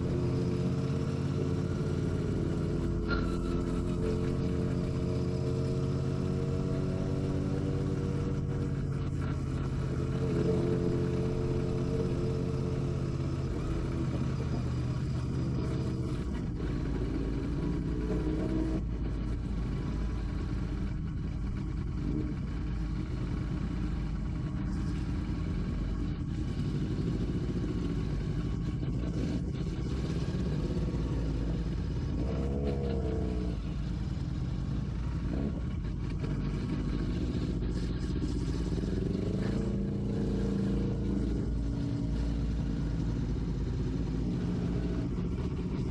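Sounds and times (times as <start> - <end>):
motorcycle engine running: 0.0 - 45.9.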